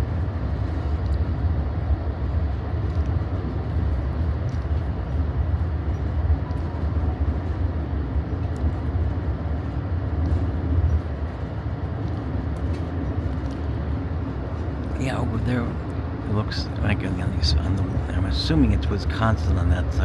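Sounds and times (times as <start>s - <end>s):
train car rumbling on track: 0.0s - 20.0s
faint light ticks: 2.8s - 7.1s.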